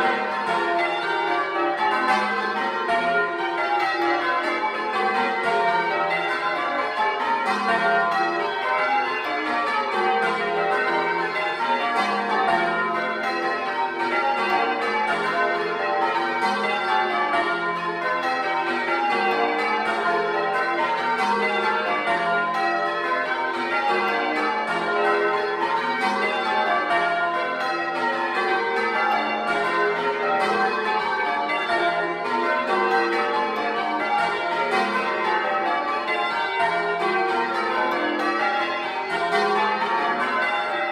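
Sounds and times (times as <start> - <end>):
church bells change ringing: 0.0 - 40.9.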